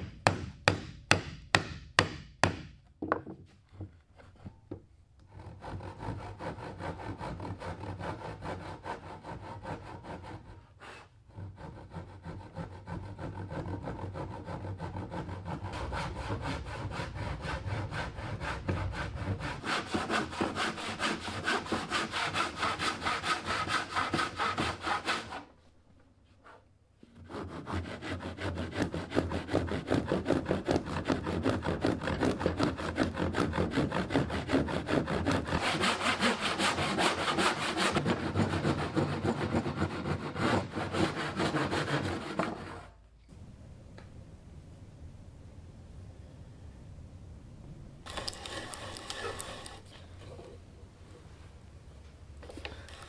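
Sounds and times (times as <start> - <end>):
hand saw cutting wood: 5.2 - 25.6, 27.1 - 43.0, 48.1 - 50.5.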